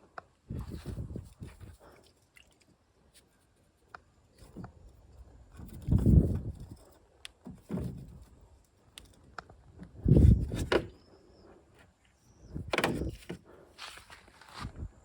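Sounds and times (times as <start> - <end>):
dull knocks and clatters: 7.4 - 8.4, 12.6 - 13.4.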